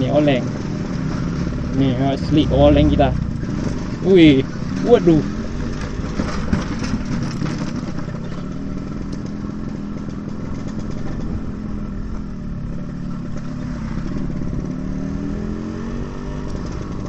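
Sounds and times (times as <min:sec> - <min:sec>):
two-stroke motorcycle engine running: 0:00.0 - 0:17.0.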